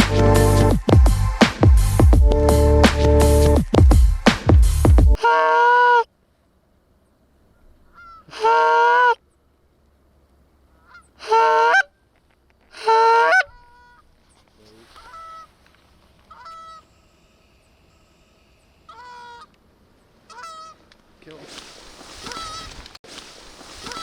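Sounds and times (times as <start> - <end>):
goose call honks: 5.2 - 6.1, 8.0 - 9.2, 10.8 - 11.9, 12.8 - 14.0, 14.9 - 15.5, 16.3 - 16.8, 20.3 - 20.8, 22.2 - 22.8.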